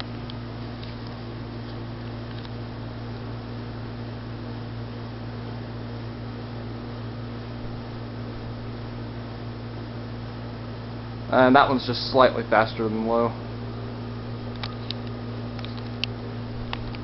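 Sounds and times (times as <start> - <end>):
ceiling fan running: 0.0 - 17.0.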